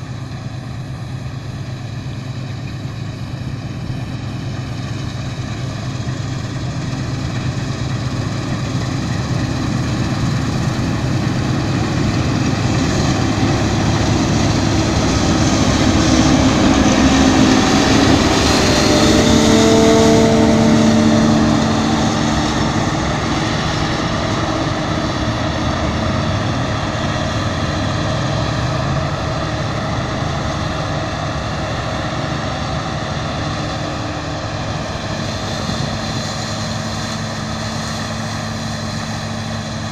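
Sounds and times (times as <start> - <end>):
combine harvester drone: 0.0 - 39.9.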